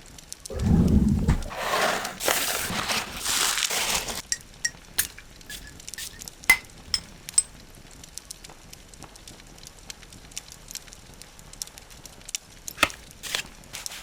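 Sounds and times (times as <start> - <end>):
packaging material rustling: 1.3 - 4.4, 12.8 - 13.5.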